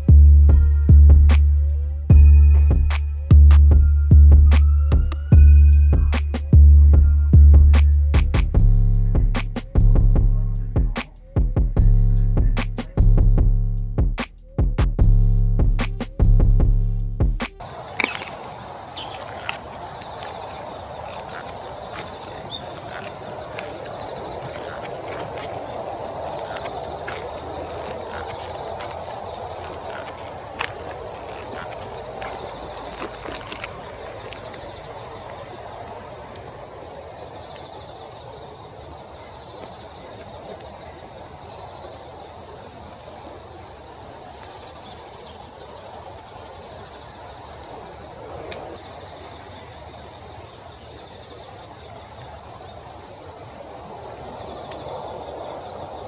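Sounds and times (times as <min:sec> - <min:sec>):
rushing background noise: 0:00.0 - 0:37.6
insects chirping: 0:00.0 - 0:56.0.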